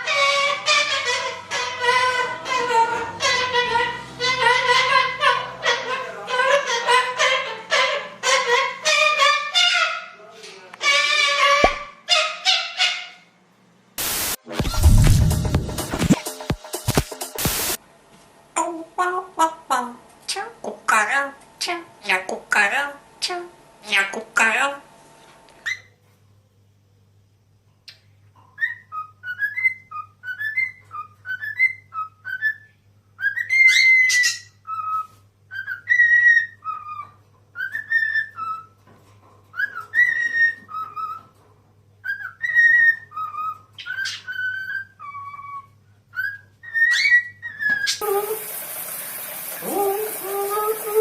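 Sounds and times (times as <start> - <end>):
parrot high chirps: 0.0 - 10.2, 10.8 - 13.3, 28.5 - 38.8, 42.0 - 51.0
parrot whistling a tune: 28.6 - 38.8, 39.5 - 41.3, 42.0 - 48.4.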